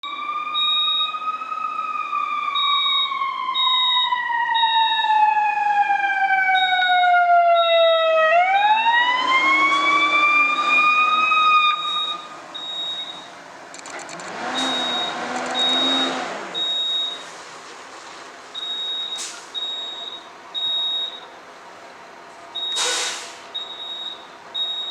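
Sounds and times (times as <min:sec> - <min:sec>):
fire truck siren: 0:00.0 - 0:13.3, 0:14.4 - 0:17.4
fire alarm beeping: 0:00.6 - 0:01.2, 0:02.6 - 0:05.2, 0:07.6 - 0:07.8, 0:11.8 - 0:13.2, 0:16.6 - 0:17.2, 0:18.6 - 0:21.2, 0:22.6 - 0:22.8, 0:23.6 - 0:24.9.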